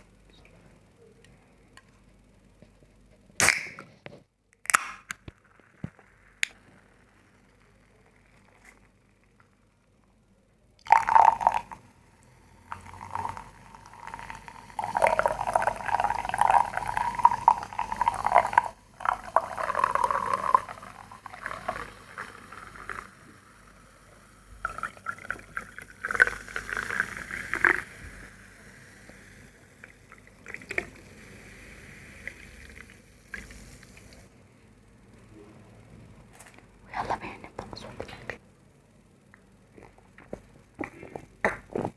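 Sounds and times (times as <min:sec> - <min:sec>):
liquid being poured: 0:10.8 - 0:23.2, 0:24.6 - 0:34.2.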